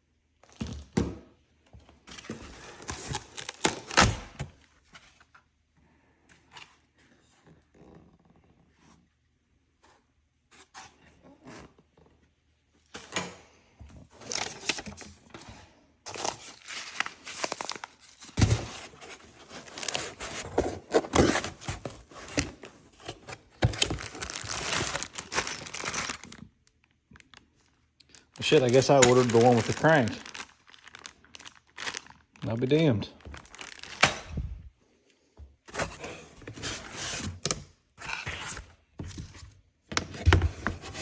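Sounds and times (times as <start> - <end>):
packaging tearing and crinkling: 2.7 - 4.5, 16.1 - 27.5, 28.1 - 34.4.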